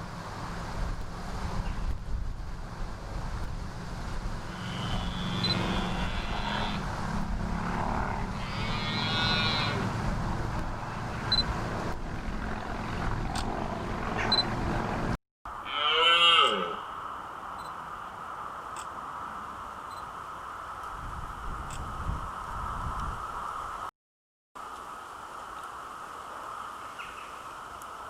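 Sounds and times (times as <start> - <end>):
deer stags roaring: 4.5 - 7.0, 7.6 - 10.0, 15.6 - 16.9.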